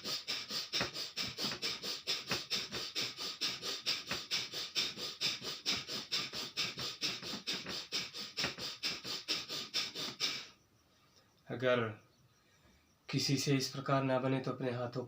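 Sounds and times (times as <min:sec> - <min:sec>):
forceful nasal breathing: 0:00.0 - 0:10.6.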